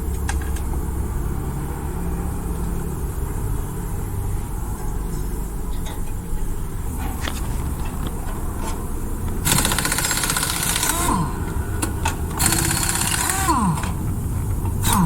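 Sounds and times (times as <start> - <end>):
low rumble: 6.4 - 15.0
compressed-air tool hissing: 9.4 - 15.0.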